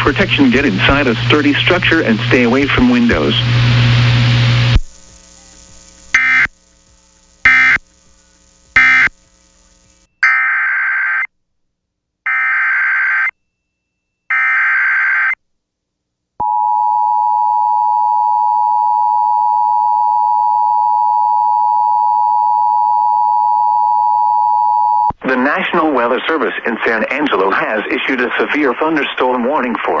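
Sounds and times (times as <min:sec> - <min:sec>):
screeching data bursts: 0:05.5 - 0:06.6, 0:07.4 - 0:07.9, 0:08.8 - 0:09.2
steady alarm tone: 0:06.2 - 0:06.5, 0:07.5 - 0:07.8, 0:08.8 - 0:09.1, 0:10.2 - 0:11.3, 0:12.3 - 0:13.4, 0:14.3 - 0:15.4.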